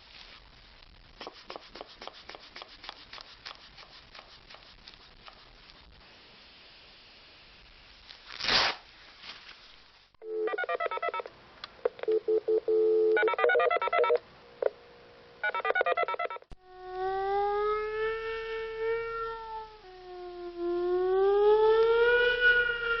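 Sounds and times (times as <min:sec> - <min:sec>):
rustle: 0:00.0 - 0:01.2, 0:07.5 - 0:10.1
keypad beeps: 0:10.2 - 0:11.3, 0:11.9 - 0:14.2, 0:15.4 - 0:16.4
siren winding up: 0:15.4 - 0:23.0.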